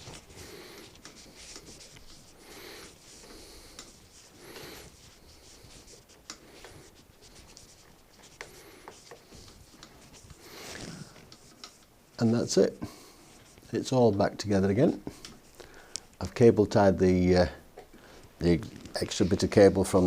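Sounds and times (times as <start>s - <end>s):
hands rubbing cables: 0.0s - 11.9s.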